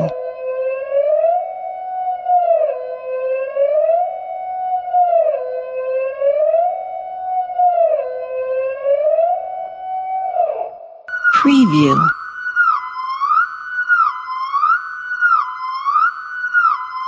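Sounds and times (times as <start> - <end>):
two-tone alarm siren: 12.2 - 17.0.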